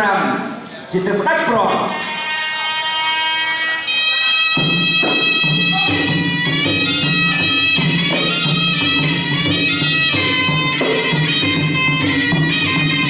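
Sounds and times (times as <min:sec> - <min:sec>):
reed oboe nasal melody: 0:01.8 - 0:13.0
hand drums beating rhythm: 0:04.6 - 0:13.0.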